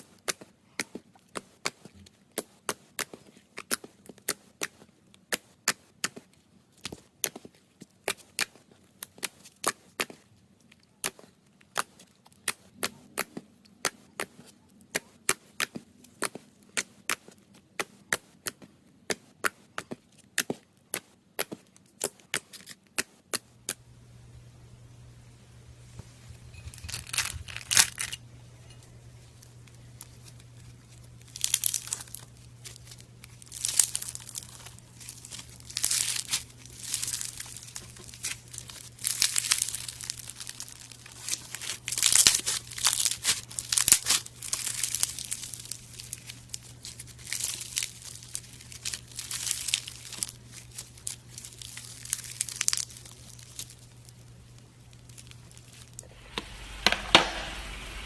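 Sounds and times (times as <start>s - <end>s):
steady low hum: 23.5s - 58.0s
slime crackling when squeezed: 29.7s - 54.2s.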